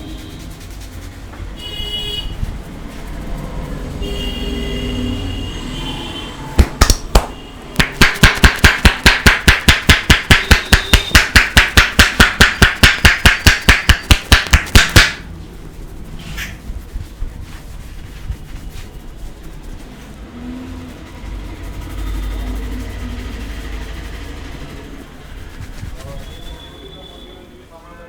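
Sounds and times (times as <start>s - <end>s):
hands slapping a head: 6.6s - 15.3s.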